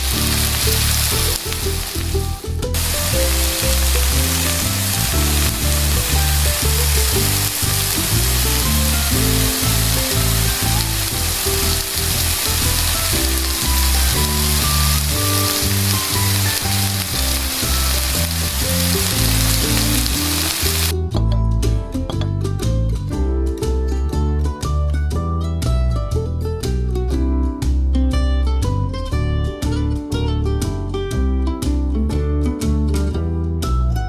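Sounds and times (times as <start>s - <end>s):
batter sizzling in hot oil: 0.0s - 21.0s
background music: 0.0s - 34.0s.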